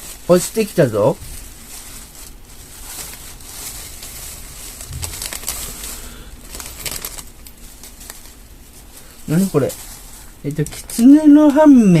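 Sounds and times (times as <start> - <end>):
object rustling and crinkling: 0.0 - 11.2
soft low thump: 4.9 - 5.3.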